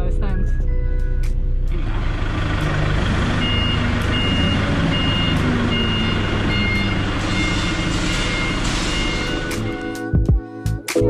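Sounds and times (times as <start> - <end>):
engine running: 0.5 - 10.2
reversing alarm beeping: 1.9 - 10.2.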